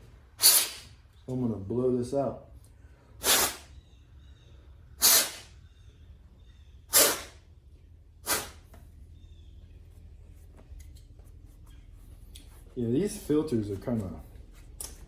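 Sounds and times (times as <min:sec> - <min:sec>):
short puffs of air: 0:00.4 - 0:01.0, 0:03.2 - 0:03.8, 0:05.0 - 0:05.6, 0:06.9 - 0:07.5, 0:08.2 - 0:08.8.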